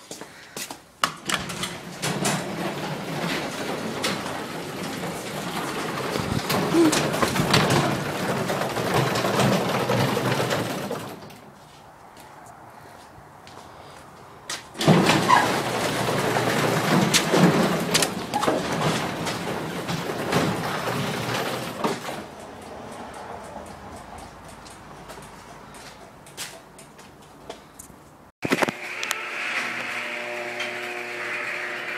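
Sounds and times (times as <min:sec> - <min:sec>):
garage door opener running: 0:01.2 - 0:11.3, 0:14.8 - 0:22.4, 0:28.5 - 0:31.9.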